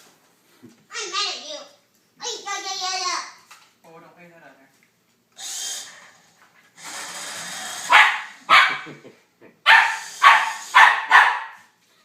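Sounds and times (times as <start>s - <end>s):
toy car motor whirring: 6.8s - 7.9s
puppy barking: 7.9s - 9.0s, 9.6s - 11.7s.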